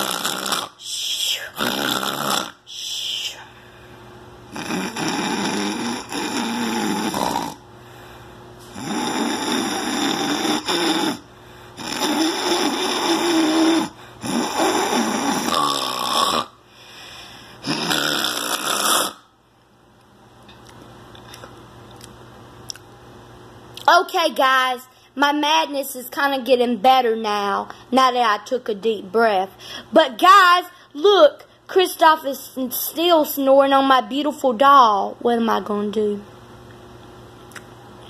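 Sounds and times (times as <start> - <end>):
man snoring loudly: 0.0 - 0.8, 1.4 - 2.6, 4.5 - 7.6, 8.7 - 11.2, 11.8 - 16.6, 17.6 - 19.3.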